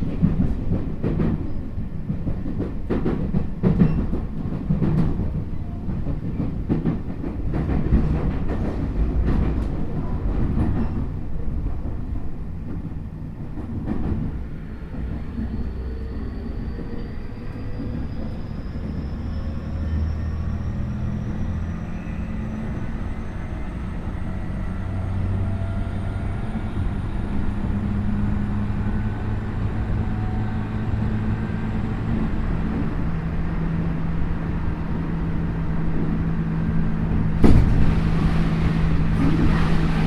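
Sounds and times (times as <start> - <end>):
train wheel and motor rumble: 0.0 - 40.0.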